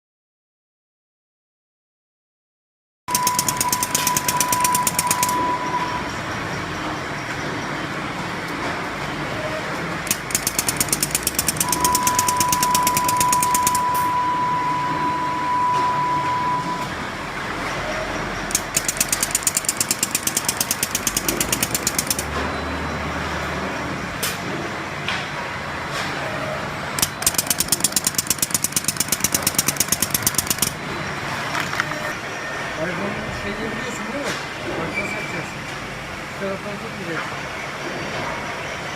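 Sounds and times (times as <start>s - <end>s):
rapid rattling clicks: 3.1s - 5.4s, 10.0s - 13.8s, 18.5s - 22.3s, 27.0s - 30.8s
steady mechanical din: 3.1s - 6.2s, 10.0s - 14.0s, 18.5s - 22.6s, 27.0s - 31.0s
steady high tone: 3.1s - 6.3s, 10.1s - 17.0s.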